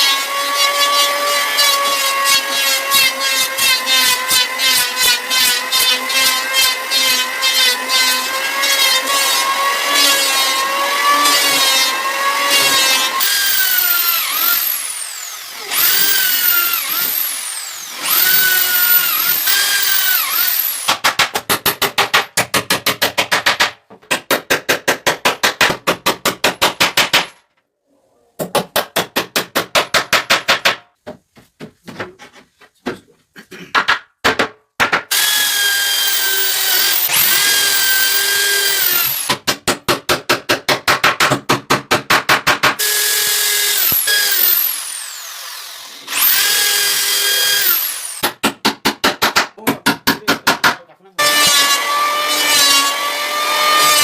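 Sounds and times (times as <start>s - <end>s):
power tool whining: 0.0s - 20.9s, 35.1s - 39.3s, 42.8s - 48.2s
power tool motor pulsing: 9.6s - 20.9s, 35.1s - 39.3s.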